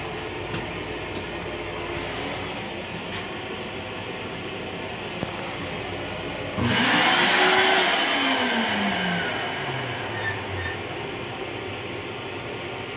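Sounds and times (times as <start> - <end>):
toilet flushing rush of air: 5.3 - 11.8
motor whine: 5.8 - 10.8.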